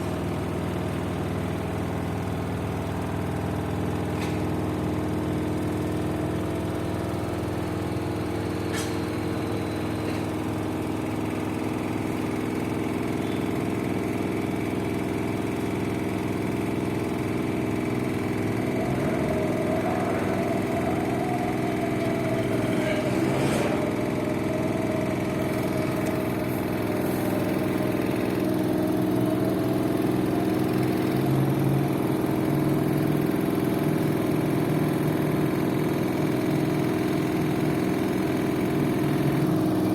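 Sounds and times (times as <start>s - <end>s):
washing machine spin hum: 0.0s - 39.9s
faint wavering whine: 18.0s - 33.9s.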